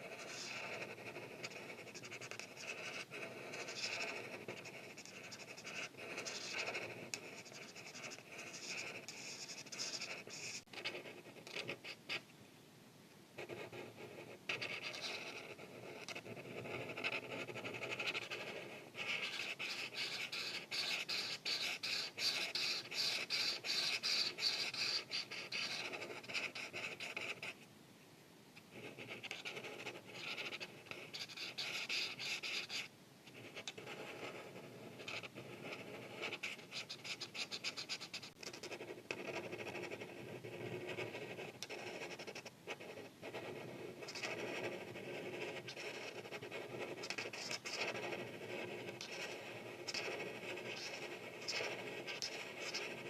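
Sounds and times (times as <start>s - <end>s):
marker scratching on paper: 0.0s - 12.2s, 13.4s - 27.6s, 28.7s - 53.0s.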